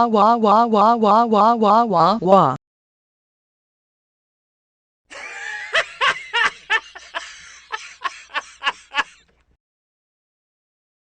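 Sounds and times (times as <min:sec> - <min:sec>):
background voices: 0:00.0 - 0:02.6
person laughing: 0:05.1 - 0:09.3.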